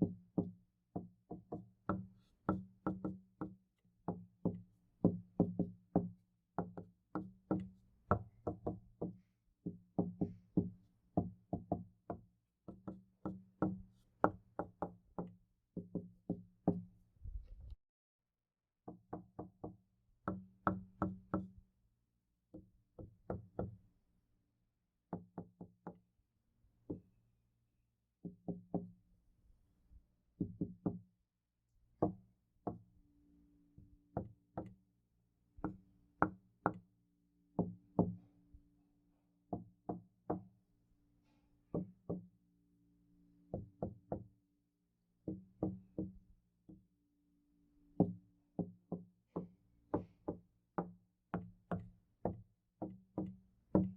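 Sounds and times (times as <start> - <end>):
knocking on a door: 0.0 - 16.8, 18.9 - 21.5, 25.1 - 26.0, 28.2 - 28.9, 30.4 - 31.0, 45.3 - 46.1, 48.0 - 53.9.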